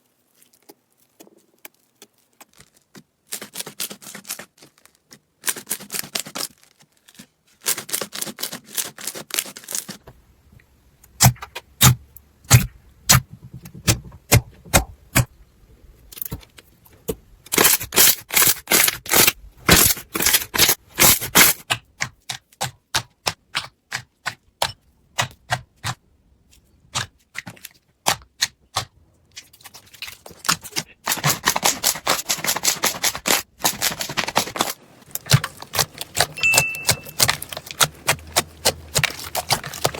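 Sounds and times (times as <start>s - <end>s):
slime clicking and popping: 35.1s - 39.9s.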